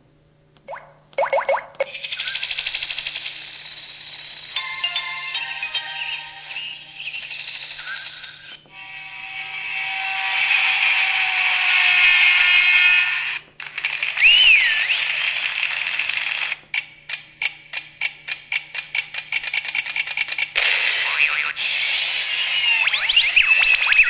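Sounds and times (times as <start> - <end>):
swooping electronic tone: 1.3 - 11.8, 22.6 - 24.0
bright shimmering electronic sound: 4.5 - 10.7
string of accelerating clicks: 13.6 - 20.6.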